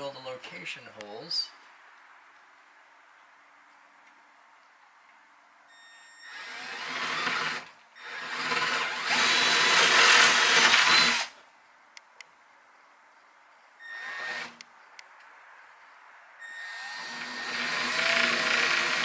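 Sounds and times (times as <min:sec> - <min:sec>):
power drill drilling into wood: 0:06.2 - 0:11.4, 0:13.9 - 0:14.6, 0:16.5 - 0:19.0.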